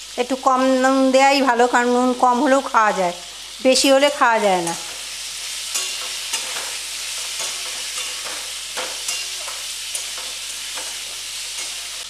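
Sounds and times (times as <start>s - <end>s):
vegetables sizzling in oil: 0.0s - 12.0s
spoon scraping and tapping pan: 4.6s - 12.0s.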